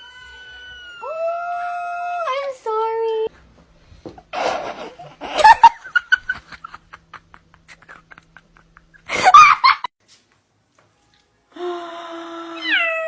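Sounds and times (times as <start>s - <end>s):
person laughing hard: 4.4s - 9.9s.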